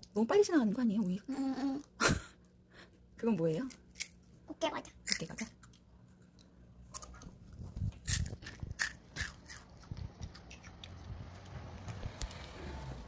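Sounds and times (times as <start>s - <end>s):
child chewing crunchy crackers: 5.1s - 12.5s.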